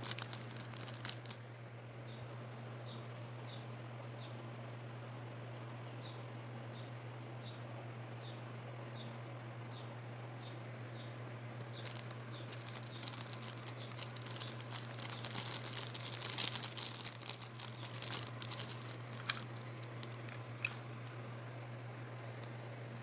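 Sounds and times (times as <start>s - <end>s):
plastic packaging crinkling: 0.0s - 1.4s, 11.8s - 21.2s
steady low hum: 0.0s - 23.0s.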